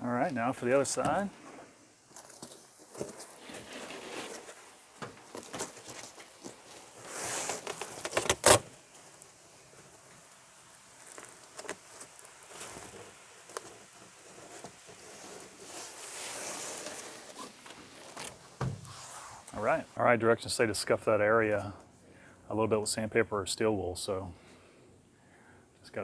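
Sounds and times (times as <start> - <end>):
rustling and scraping: 0.3 - 20.0.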